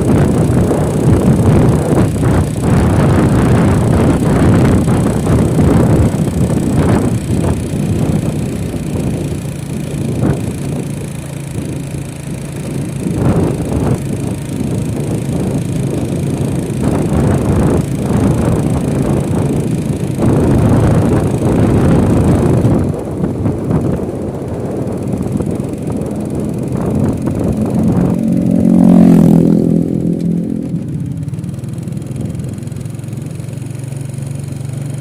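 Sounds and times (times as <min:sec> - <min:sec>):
wind buffeting microphone: 0:00.0 - 0:31.4
vehicle engine running: 0:00.0 - 0:35.0.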